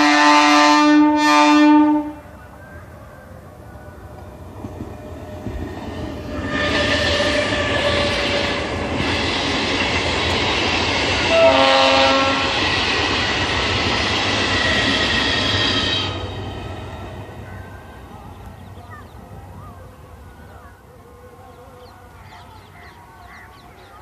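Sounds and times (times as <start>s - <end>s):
hoarse train horn: 0.0s - 2.4s, 5.0s - 10.0s, 11.1s - 13.1s, 14.2s - 16.7s
train rumble: 0.0s - 24.0s.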